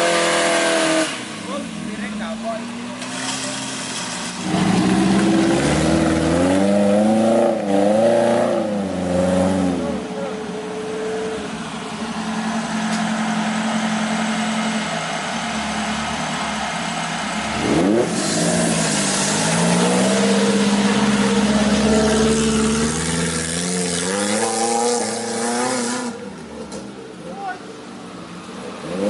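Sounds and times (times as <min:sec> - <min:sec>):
jeep engine revving: 0:00.0 - 0:27.6, 0:28.6 - 0:29.0
loud rushing noise: 0:11.4 - 0:26.4.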